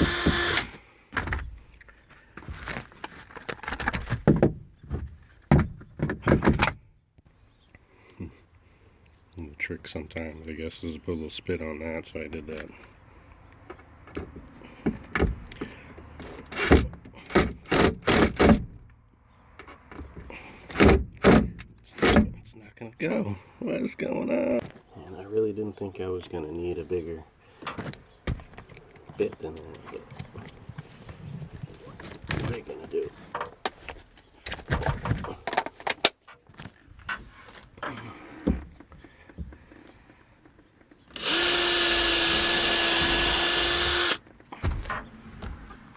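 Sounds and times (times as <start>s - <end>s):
power drill bursts: 0.0s - 0.8s, 41.1s - 44.2s.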